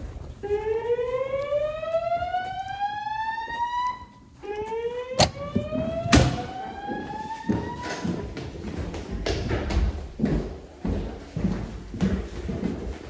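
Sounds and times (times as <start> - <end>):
fire alarm whoop tone: 0.4 - 8.0.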